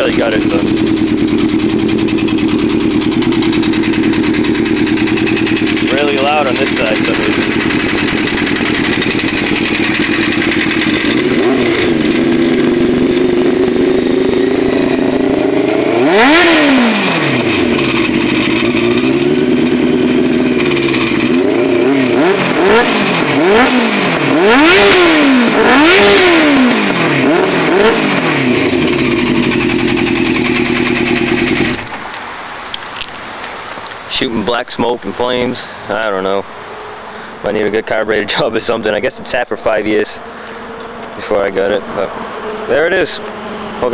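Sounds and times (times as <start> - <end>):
rapid engine ticking noise: 0.0 - 15.6, 17.4 - 21.4, 28.1 - 31.9
motorcycle engine idling and revving: 0.0 - 32.8, 33.6 - 43.9.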